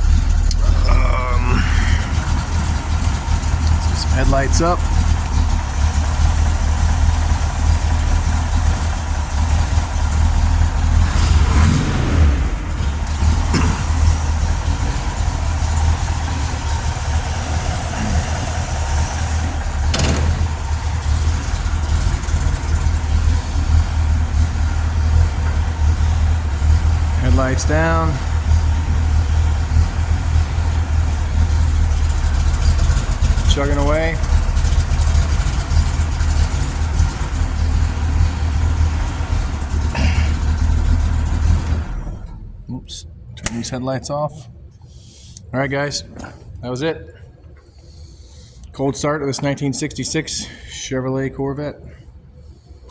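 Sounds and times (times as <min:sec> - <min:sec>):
car engine idling with low chugging: 0:00.0 - 0:52.9.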